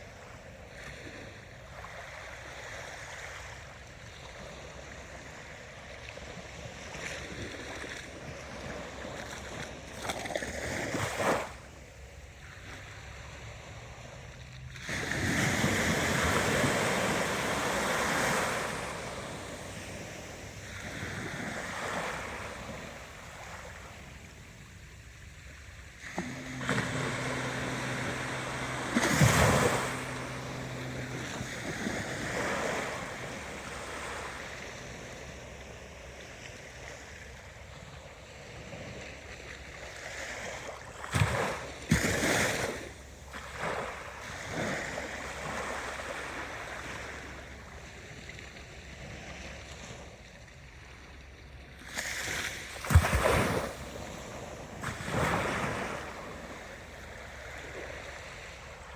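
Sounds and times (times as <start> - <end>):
ocean waves breaking: 7.7 - 37.6, 52.0 - 58.9
low steady hum: 11.8 - 38.0.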